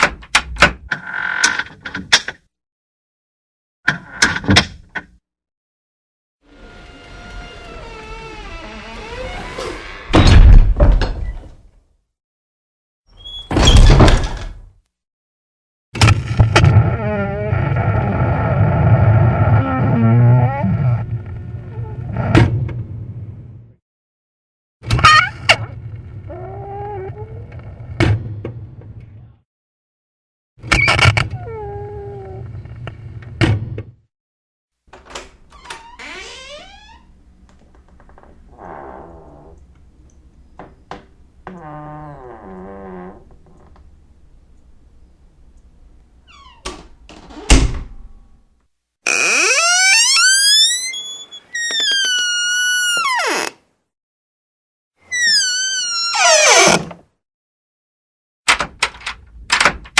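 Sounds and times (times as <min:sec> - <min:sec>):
door hinges squealing: 0:06.6 - 0:10.4, 0:13.1 - 0:13.9, 0:35.1 - 0:37.1, 0:46.3 - 0:47.6, 0:49.1 - 0:53.6, 0:55.1 - 0:57.0
door banging shut: 0:07.8 - 0:11.5, 0:13.4 - 0:14.6, 0:55.1 - 0:57.0.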